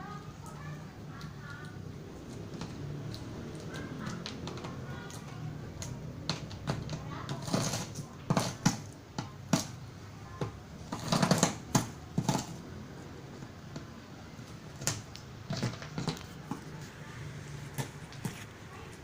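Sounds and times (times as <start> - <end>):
scraping: 2.2 - 9.8.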